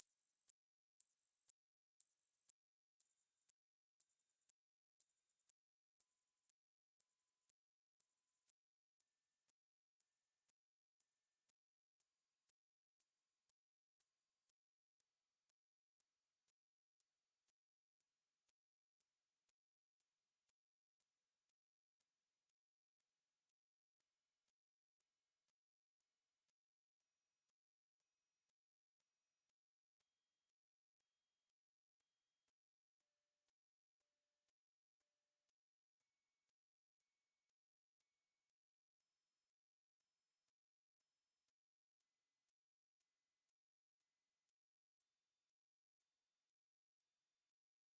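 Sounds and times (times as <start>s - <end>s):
high-pitched sine test beeps: 0.0s - 9.2s, 19.2s - 42.4s.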